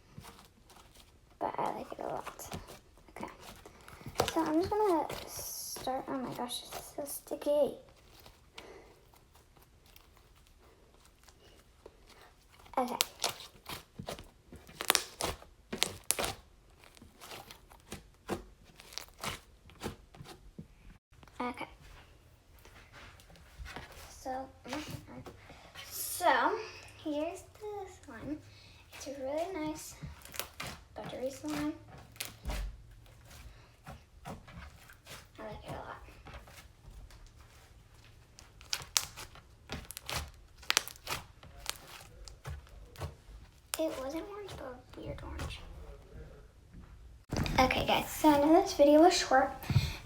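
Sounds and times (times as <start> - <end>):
slime popping and squelching: 12.5 - 20.0, 38.3 - 45.7
slime clicking and popping: 14.7 - 16.4.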